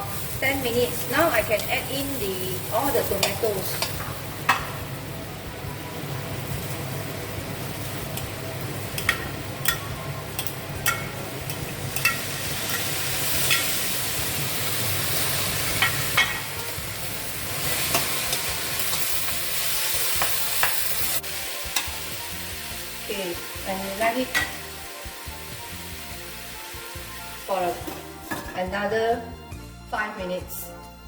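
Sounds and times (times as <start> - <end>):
vegetables sizzling in a pan: 0.0 - 28.9
utensil clicking against pan: 3.2 - 4.0, 8.9 - 12.9.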